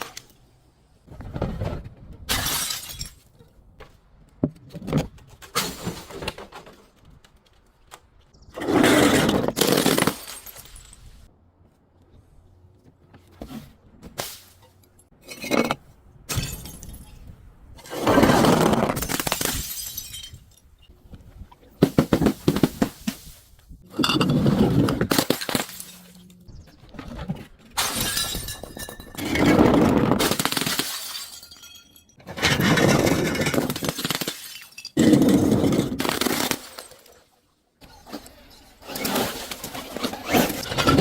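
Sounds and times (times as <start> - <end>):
glass breaking and crunching: 2.3 - 3.3, 9.4 - 11.1, 18.9 - 20.9, 25.0 - 26.4, 27.8 - 29.5, 30.1 - 37.2.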